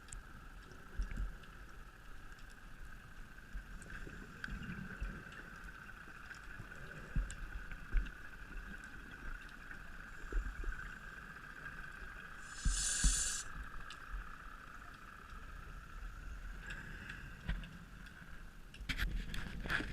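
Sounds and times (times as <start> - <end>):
steady high hum: 6.8 - 18.6.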